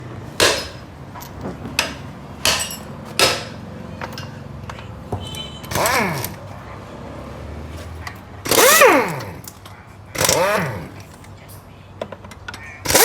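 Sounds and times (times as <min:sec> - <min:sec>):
loud ringing clanks: 0:00.4 - 0:06.4
bending squeal: 0:05.1 - 0:06.4.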